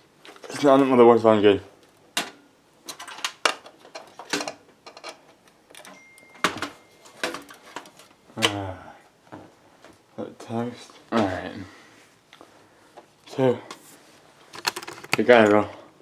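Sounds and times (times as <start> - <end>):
hands clicking on computer parts: 14.5 - 15.6.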